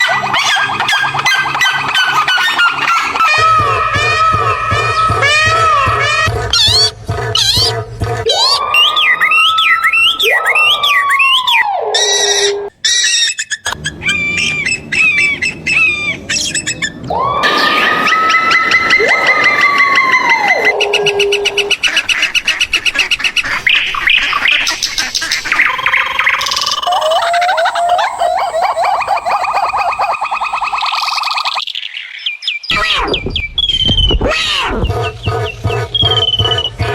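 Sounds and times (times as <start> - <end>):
bird chirps and squawks: 12.0 - 17.0
long rising and falling call: 25.6 - 31.6.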